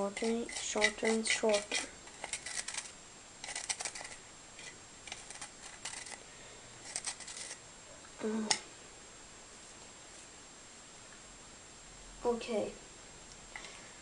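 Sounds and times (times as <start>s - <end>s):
paper rustling and scraping: 0.2s - 6.2s, 6.8s - 7.6s.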